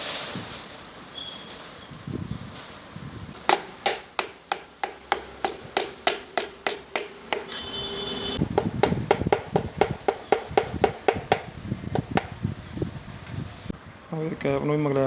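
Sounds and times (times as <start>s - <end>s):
sharp taps on metal pistons: 3.5s - 7.8s.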